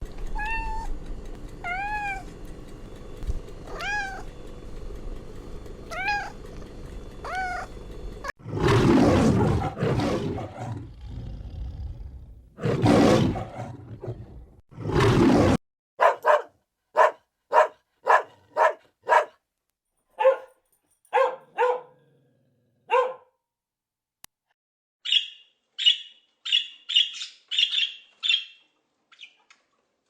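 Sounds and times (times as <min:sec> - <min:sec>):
cat meowing: 0:00.3 - 0:00.9, 0:01.6 - 0:02.3, 0:03.6 - 0:04.3, 0:05.9 - 0:06.4, 0:07.2 - 0:07.7.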